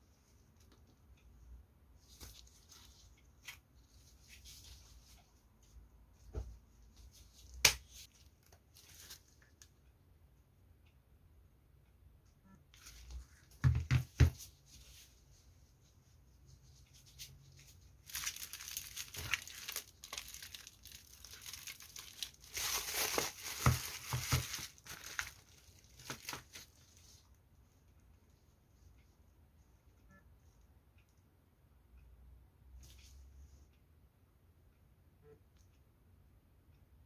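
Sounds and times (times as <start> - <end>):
packaging crinkling and tearing: 18.0 - 26.8.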